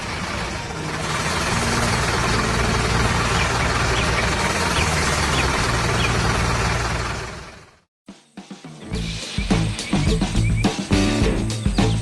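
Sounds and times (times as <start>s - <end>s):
heavy truck engine running: 0.0s - 7.9s.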